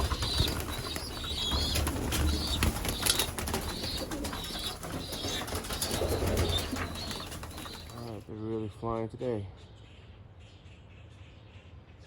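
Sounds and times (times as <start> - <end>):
pigeons flapping wings: 0.0 - 8.2
pigeons shuffling about: 0.0 - 8.2.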